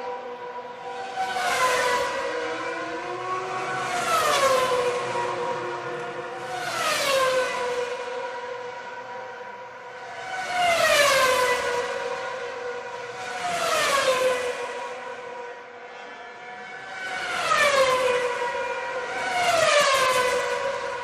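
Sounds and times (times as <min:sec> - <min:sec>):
race cars passing at high speed: 0:00.0 - 0:21.0.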